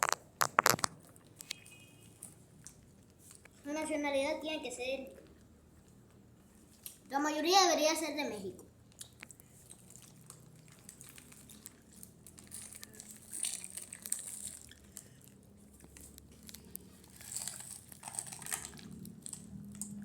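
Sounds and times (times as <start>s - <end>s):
chewing gummy candies: 0.0s - 1.6s, 5.0s - 7.1s, 8.7s - 20.0s
wrapper crinkling: 0.0s - 1.6s, 9.2s - 20.0s.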